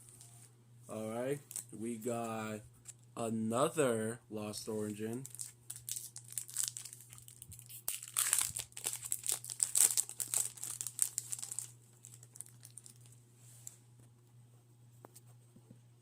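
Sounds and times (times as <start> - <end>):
low steady hum: 0.0 - 16.0
foil wrapper crinkling and tearing: 1.5 - 1.8, 5.1 - 13.1.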